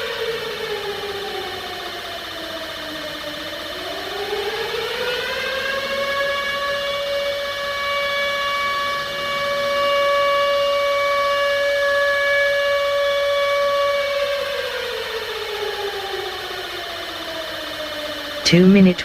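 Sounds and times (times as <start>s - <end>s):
air-raid siren wailing: 0.0s - 19.0s.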